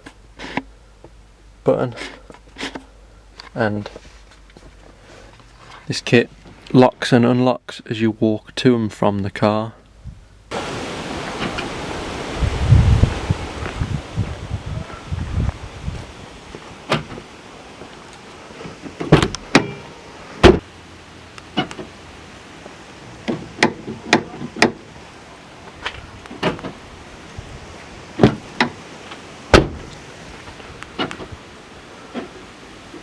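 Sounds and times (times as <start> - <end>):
low steady background noise: 0.0 - 33.0
sharp clicks and clunks: 23.2 - 24.8.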